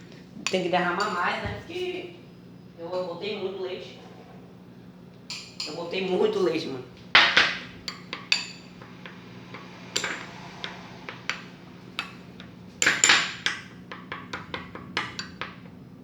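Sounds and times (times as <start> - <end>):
spoon clinking against bowl: 5.3 - 6.6, 7.2 - 15.7.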